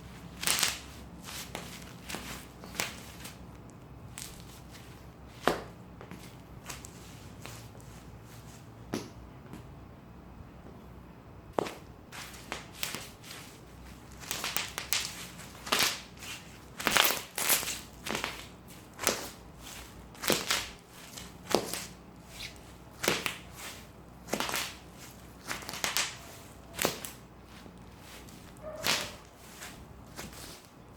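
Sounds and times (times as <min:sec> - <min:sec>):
bubble wrap popping: 0:00.3 - 0:03.4, 0:14.1 - 0:19.4, 0:20.1 - 0:23.6, 0:24.2 - 0:27.2, 0:28.1 - 0:30.7.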